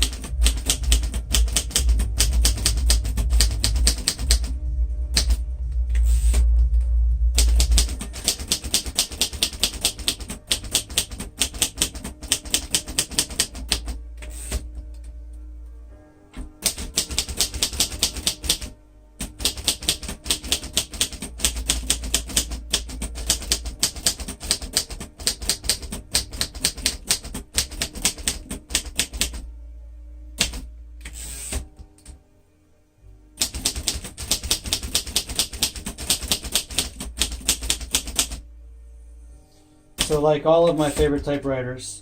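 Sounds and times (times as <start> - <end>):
typewriter key strikes: 0.0 - 4.5, 7.4 - 14.6, 16.6 - 29.4, 30.4 - 30.6, 33.4 - 38.4, 40.0 - 41.2.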